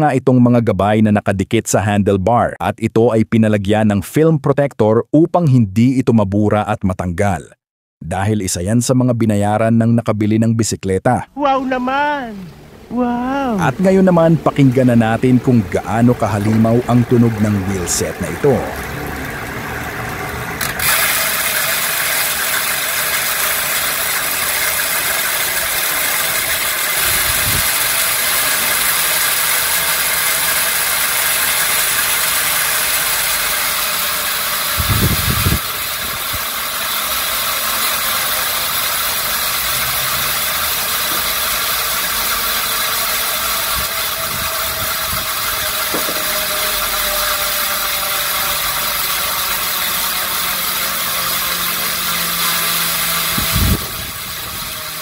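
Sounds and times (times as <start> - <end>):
freehub ratchet clicking: 13.6 - 55.0.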